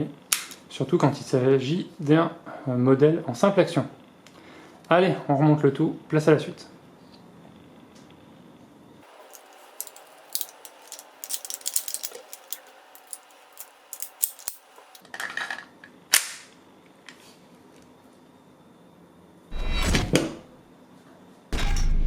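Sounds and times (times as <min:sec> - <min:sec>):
pistol parts clicking: 0:09.1 - 0:15.0.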